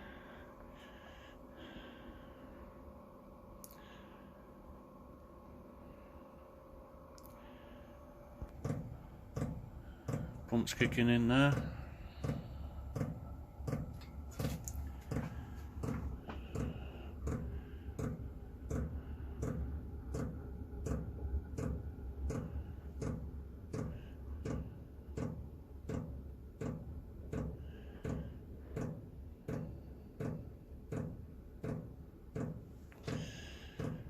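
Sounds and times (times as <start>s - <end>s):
fuel pump ticking: 8.4s - 34.0s.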